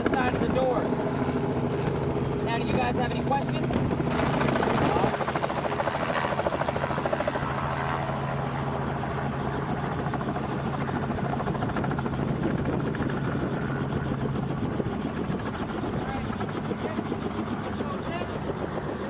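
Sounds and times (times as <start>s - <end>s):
low engine tone: 0.0s - 5.2s
helicopter rotor beat: 0.0s - 19.0s.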